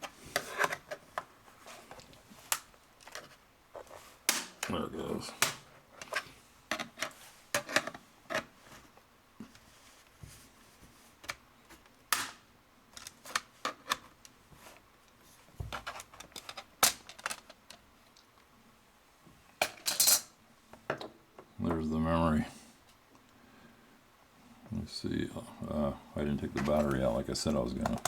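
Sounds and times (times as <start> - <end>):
plastic clicks taps and rattles: 27.8 - 28.0.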